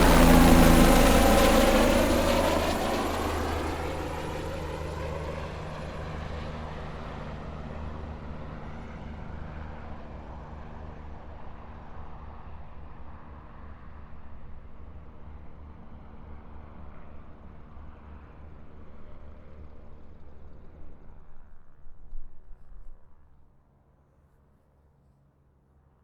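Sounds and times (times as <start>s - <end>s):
helicopter flying off: 0.0s - 10.1s.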